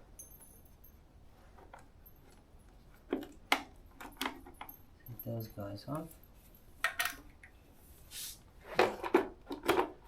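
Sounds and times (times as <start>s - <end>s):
bolts clicking and knocking: 1.6s - 4.9s.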